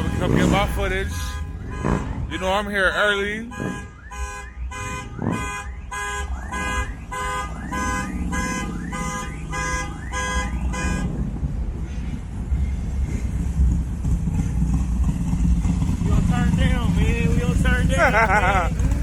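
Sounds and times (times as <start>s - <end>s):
vehicle alarm swooping tone: 0.0s - 11.4s
steady low rumble: 0.0s - 19.0s.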